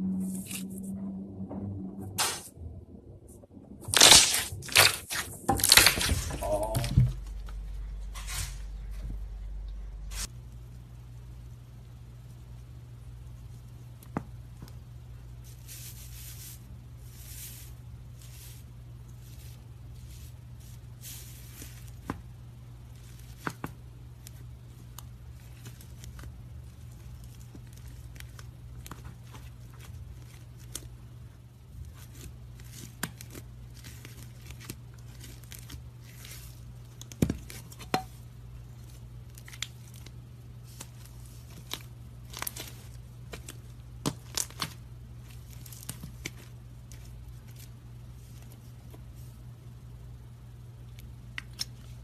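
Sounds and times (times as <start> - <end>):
steady low hum: 0.0 - 52.0
slime stretching and tearing: 3.8 - 6.9.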